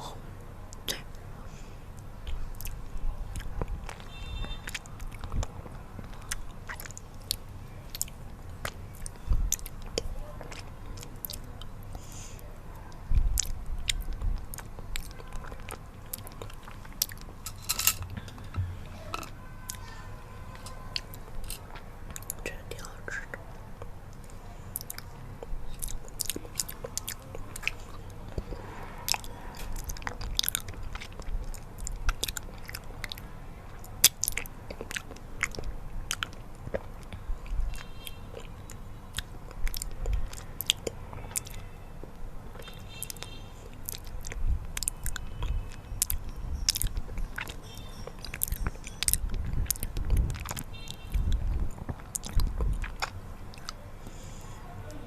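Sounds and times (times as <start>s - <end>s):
wet mouth clicks: 0.8s - 1.2s, 2.3s - 12.1s, 24.8s - 33.2s, 33.8s - 41.6s, 42.6s - 54.2s
sticky chewing and biting: 2.3s - 12.0s, 12.9s - 17.5s, 23.8s - 54.2s
soft low thumps: 18.0s - 18.9s.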